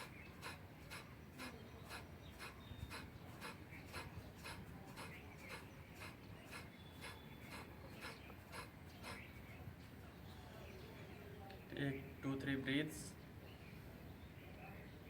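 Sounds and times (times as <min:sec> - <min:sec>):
forced exhalations: 0:00.0 - 0:09.3.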